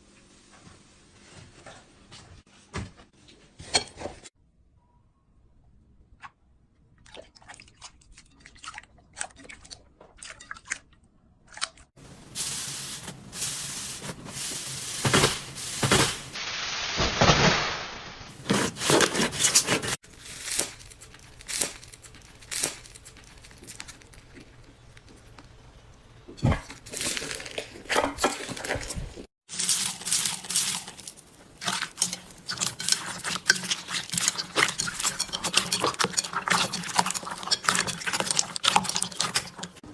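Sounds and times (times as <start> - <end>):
slime crackling and squishing: 20.0 - 25.3.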